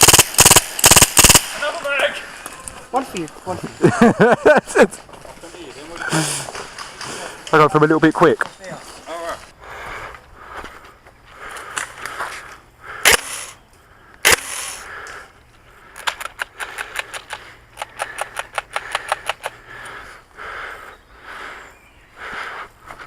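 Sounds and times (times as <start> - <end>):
airsoft guns firing: 0.0 - 1.9, 13.0 - 13.6, 14.2 - 14.9.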